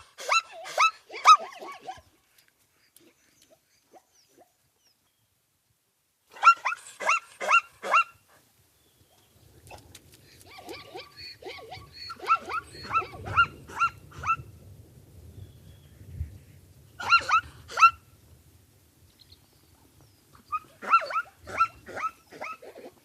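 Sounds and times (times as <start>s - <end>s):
animal yelping: 0.0s - 2.1s, 10.3s - 14.5s, 17.0s - 18.0s, 20.4s - 23.0s
low background noise: 0.0s - 23.0s.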